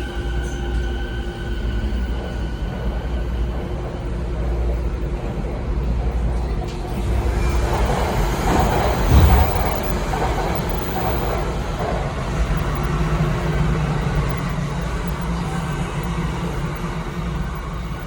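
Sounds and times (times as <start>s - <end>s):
train wheels rumbling on rail: 0.0s - 18.0s
train motor hum: 8.0s - 10.9s
thump: 9.1s - 9.9s.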